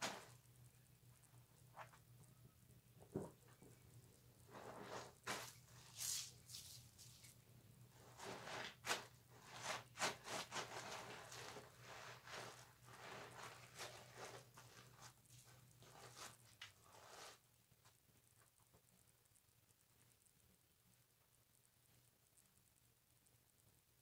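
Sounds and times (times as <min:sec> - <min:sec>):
loofah scrubbing soap: 0:04.4 - 0:17.4.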